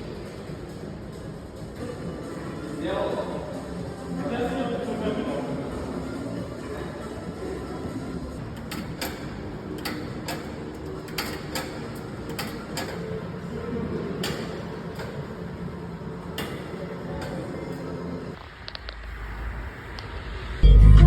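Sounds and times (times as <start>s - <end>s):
sharp clicks and knocks: 8.4s - 13.1s.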